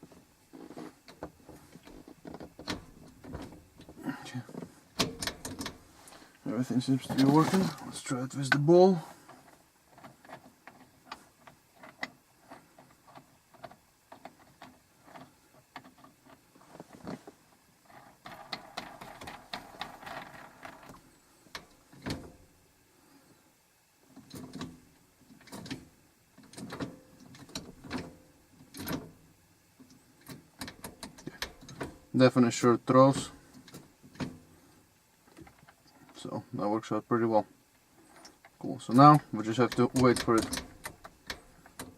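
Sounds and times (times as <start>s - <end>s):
gear shifter clicks and clunks: 0.0s - 5.9s, 6.5s - 8.8s, 24.1s - 29.2s, 29.8s - 32.3s, 38.1s - 41.9s.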